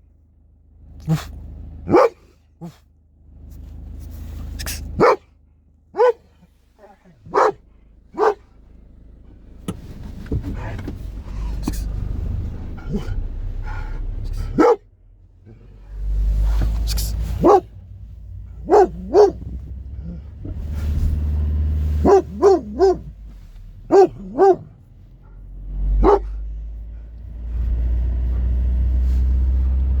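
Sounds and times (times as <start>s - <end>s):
low steady rumble: 0.0s - 30.0s
dog barking deeply: 1.0s - 2.8s, 4.7s - 5.3s, 6.0s - 8.5s, 12.7s - 13.3s, 14.3s - 14.9s, 16.6s - 23.2s, 23.8s - 26.6s.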